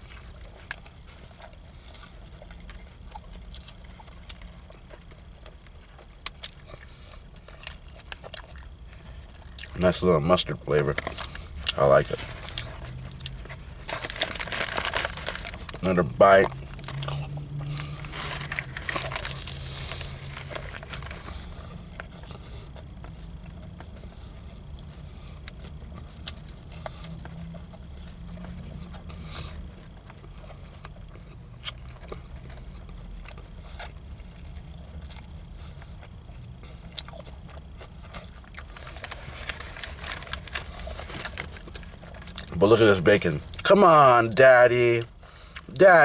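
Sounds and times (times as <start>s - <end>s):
person chewing: 0.0s - 10.0s, 10.7s - 42.6s
steady low hum: 0.0s - 46.0s
paper wrapper crinkling: 10.7s - 17.1s, 17.7s - 22.2s, 38.6s - 43.8s
small clicks and crackles: 38.6s - 42.5s.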